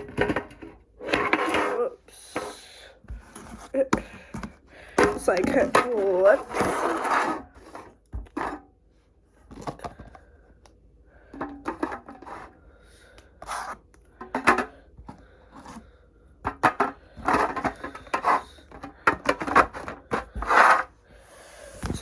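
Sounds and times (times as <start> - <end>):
plastic containers scraping: 0.0 - 8.6, 11.3 - 12.6, 13.4 - 15.9, 16.5 - 21.0, 21.7 - 22.0
plastic containers clattering: 0.0 - 8.7, 9.5 - 10.3, 11.3 - 12.6, 13.4 - 15.8, 16.5 - 21.0, 21.8 - 22.0.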